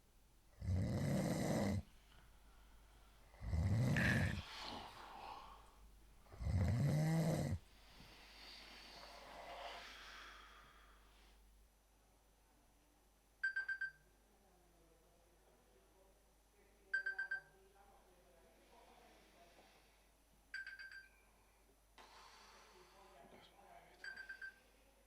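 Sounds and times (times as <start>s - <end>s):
man snoring: 0.6s - 1.8s, 3.4s - 5.2s, 6.4s - 7.6s
soft breathing: 0.8s - 11.5s, 21.2s - 25.0s.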